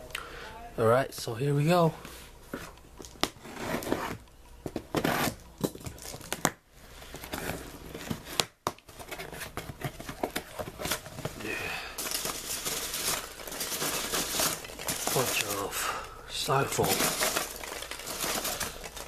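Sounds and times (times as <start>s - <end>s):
cardboard rustling and scraping: 2.5s - 5.4s, 6.9s - 15.7s, 16.5s - 19.0s
tape tearing and crinkling: 4.9s - 6.6s, 7.2s - 15.7s, 16.5s - 19.0s.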